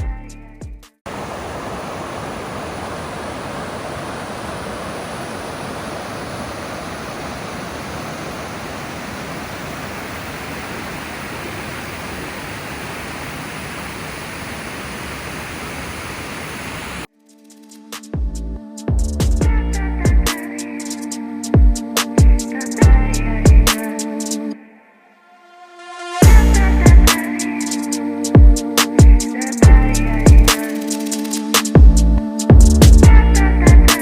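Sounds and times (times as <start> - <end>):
music: 0.0 - 1.0, 17.1 - 34.0
waterfall roaring: 1.1 - 17.1.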